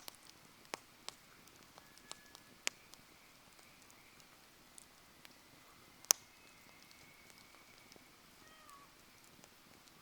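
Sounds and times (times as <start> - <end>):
campfire crackling: 0.0 - 10.0
thin faint whistle: 1.8 - 4.3, 5.1 - 8.9.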